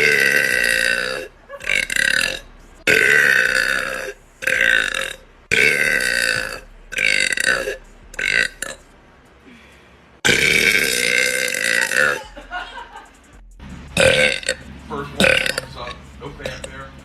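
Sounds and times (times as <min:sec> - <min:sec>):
woman belching loudly: 0:00.0 - 0:08.8, 0:10.3 - 0:12.2, 0:15.2 - 0:15.6.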